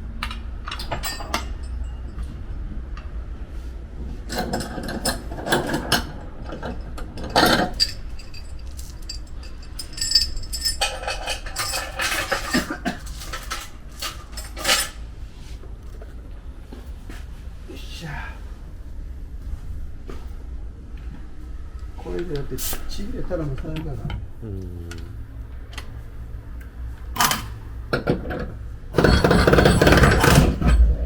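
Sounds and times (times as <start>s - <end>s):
metal tools clinking on steel panel: 0.7s - 2.0s, 4.3s - 15.0s, 27.2s - 30.8s.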